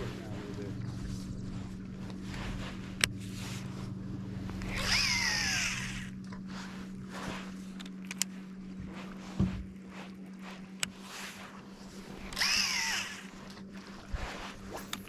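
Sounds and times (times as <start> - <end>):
steady low hum: 0.0 - 15.0
fishing line whizzing off reel: 1.2 - 8.4, 10.8 - 15.0.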